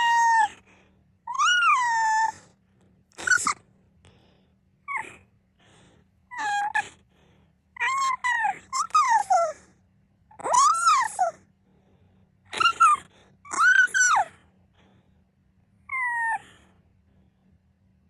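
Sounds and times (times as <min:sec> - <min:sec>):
small pet whining: 0:00.0 - 0:00.7, 0:01.3 - 0:02.6, 0:03.2 - 0:03.6, 0:04.8 - 0:05.3, 0:06.3 - 0:07.0, 0:07.8 - 0:09.7, 0:10.3 - 0:11.5, 0:12.5 - 0:14.4, 0:15.9 - 0:16.7.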